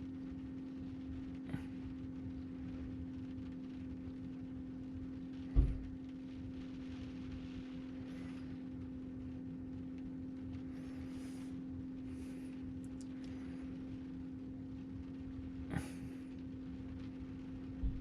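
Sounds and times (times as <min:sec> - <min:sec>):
low electrical hum: 0:00.0 - 0:18.0
dull thud: 0:05.5 - 0:05.9.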